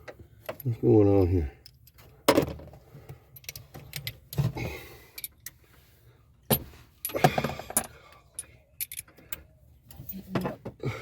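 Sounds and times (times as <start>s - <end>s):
metal tools and parts clinking: 6.5s - 10.6s.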